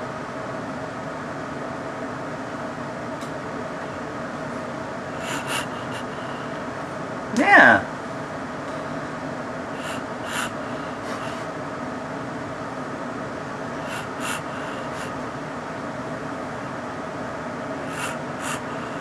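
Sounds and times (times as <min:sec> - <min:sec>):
steady background hum: 0:00.0 - 0:19.0
soft hissing puffs: 0:05.2 - 0:06.6, 0:09.8 - 0:11.6, 0:13.8 - 0:15.2, 0:17.8 - 0:19.0.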